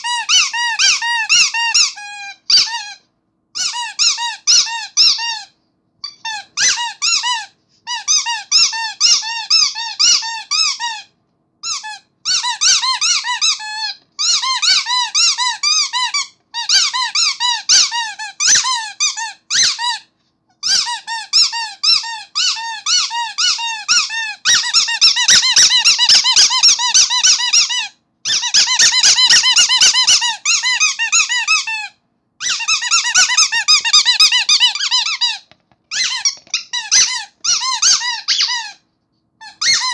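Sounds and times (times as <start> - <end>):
squeaky toy squeaking: 0.0 - 39.9.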